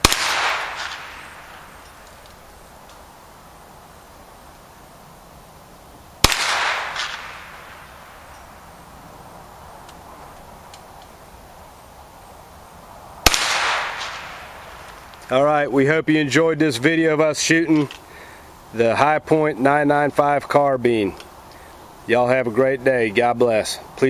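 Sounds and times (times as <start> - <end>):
carbine gunshots ringing out: 0.0 - 2.2, 6.2 - 8.5, 13.2 - 15.1.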